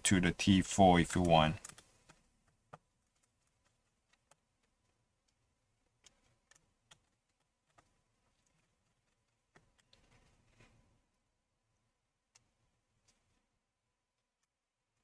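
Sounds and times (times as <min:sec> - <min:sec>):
faint small clicks: 0:01.6 - 0:02.2, 0:03.1 - 0:10.8.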